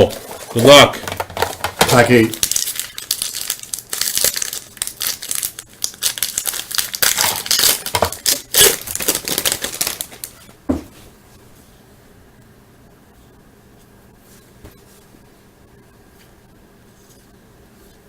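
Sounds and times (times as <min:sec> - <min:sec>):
foil wrapper tearing and crinkling: 0:00.0 - 0:10.4.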